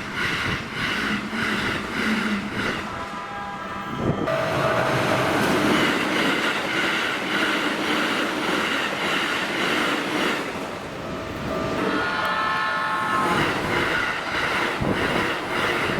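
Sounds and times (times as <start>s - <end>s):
train rushing past: 0.0s - 15.9s
level crossing warning bell: 4.3s - 5.8s, 10.9s - 12.7s.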